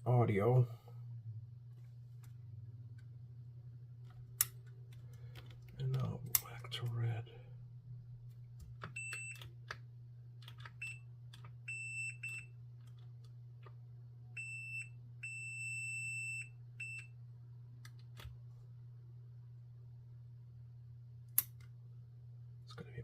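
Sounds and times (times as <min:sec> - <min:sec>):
steady low hum: 0:00.0 - 0:23.0
multimeter continuity beeps: 0:08.9 - 0:09.4, 0:10.8 - 0:12.6, 0:14.4 - 0:17.2.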